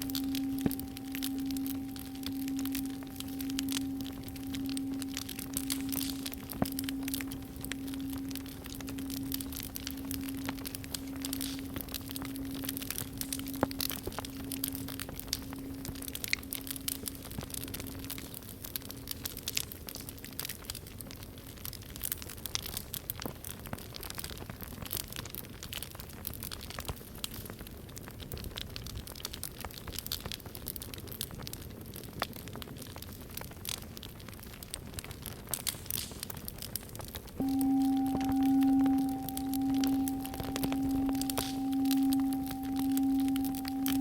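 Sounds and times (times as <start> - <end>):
singing bowl ringing: 0.0 - 18.9, 37.4 - 44.0
wood fire crackling and popping: 0.0 - 44.0.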